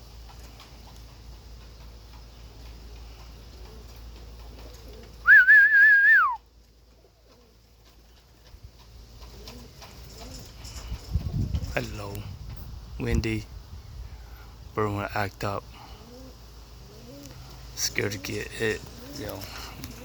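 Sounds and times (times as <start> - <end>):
person whistling: 5.2 - 6.4
wind rumble on microphone: 10.6 - 14.8.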